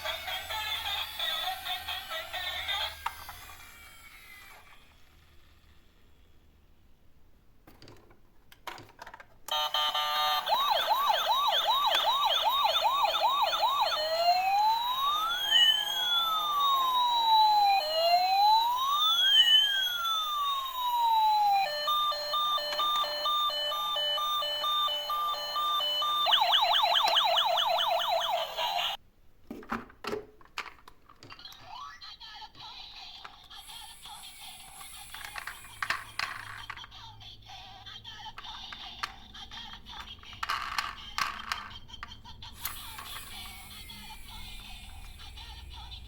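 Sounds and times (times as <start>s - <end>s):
emergency siren cycling patterns: 9.5s - 29.0s, 42.7s - 46.0s.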